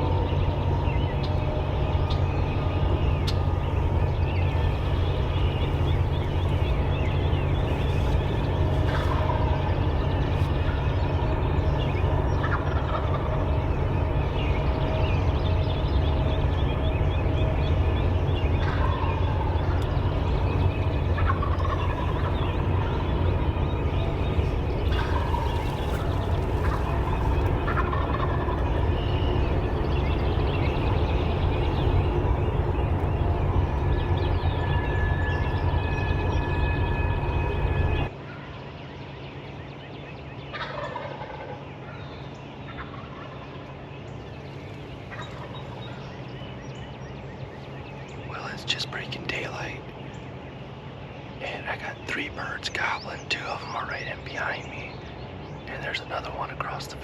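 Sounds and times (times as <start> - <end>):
songbirds chirping: 0.0 - 57.0
steady low rumble: 0.0 - 57.0
wild turkey gobbling: 3.1 - 14.5, 18.5 - 33.2, 40.5 - 42.0, 42.7 - 43.6, 45.1 - 45.6.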